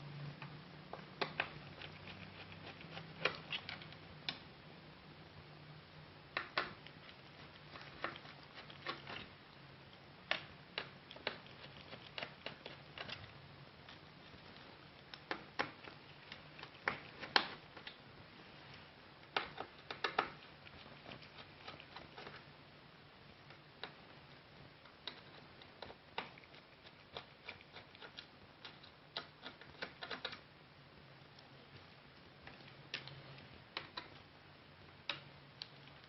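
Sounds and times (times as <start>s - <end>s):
small parts clicking and tapping: 6.3s - 9.3s, 19.3s - 22.4s, 24.8s - 30.4s.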